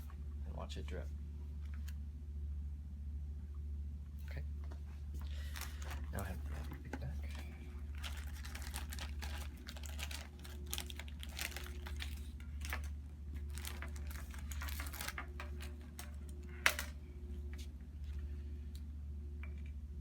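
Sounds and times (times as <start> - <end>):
steady low hum: 0.0 - 20.0
plastic tubing clicking and rustling: 4.6 - 18.8.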